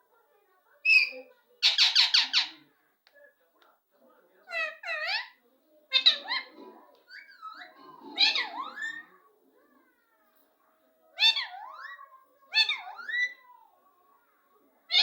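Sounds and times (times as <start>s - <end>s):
parrot crying: 0.9s - 2.6s, 4.5s - 9.1s, 11.2s - 13.7s.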